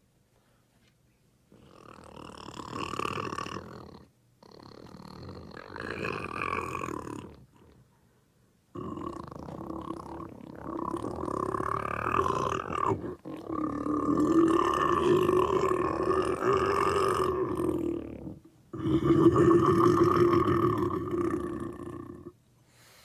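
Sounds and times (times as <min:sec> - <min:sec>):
guttural monster growls: 0:08.8 - 0:22.2.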